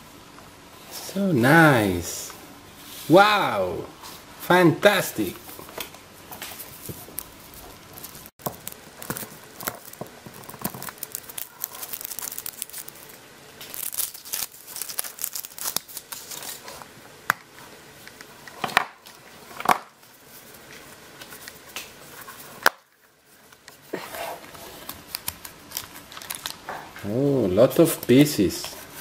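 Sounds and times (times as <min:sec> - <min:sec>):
wrapping crinkling and tearing: 0:06.4 - 0:16.9, 0:20.0 - 0:29.0.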